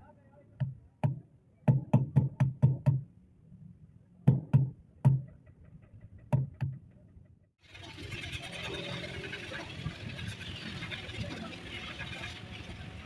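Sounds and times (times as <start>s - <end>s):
steady running noise: 7.6s - 13.0s.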